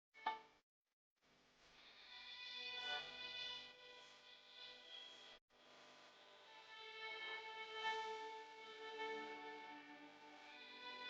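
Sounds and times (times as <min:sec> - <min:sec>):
quiet music of held notes: 0:06.2 - 0:11.0.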